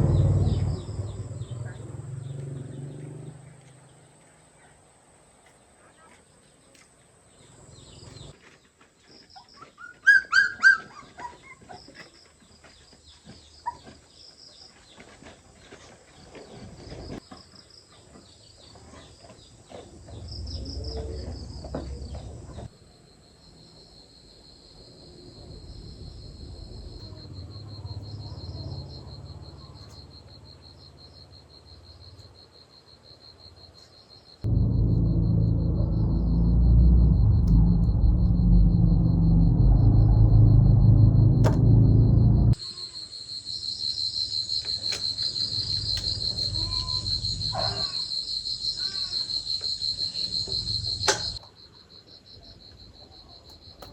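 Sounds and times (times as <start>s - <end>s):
low rumbling noise: 0.0s - 3.2s, 20.0s - 22.7s, 34.4s - 42.6s, 45.5s - 47.8s
rapid insect trill: 42.6s - 53.8s.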